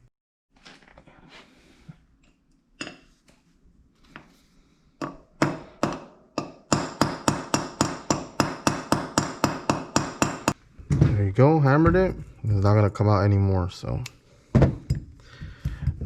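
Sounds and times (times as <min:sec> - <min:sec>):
hammer striking metal: 0:05.0 - 0:10.6.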